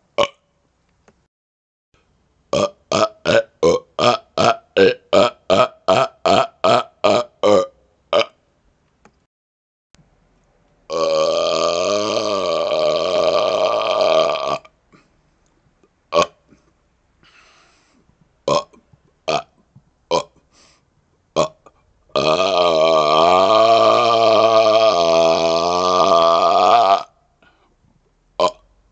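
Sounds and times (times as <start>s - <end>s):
man burping: 0.2s - 0.4s, 2.5s - 8.4s, 10.9s - 15.1s, 18.5s - 20.4s, 21.4s - 27.2s, 28.4s - 28.7s.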